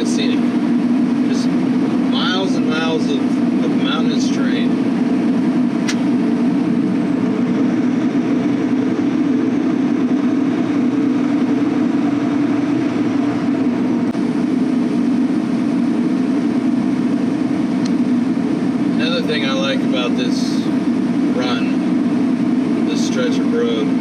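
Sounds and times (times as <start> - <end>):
truck engine and road noise: 0.0 - 24.0.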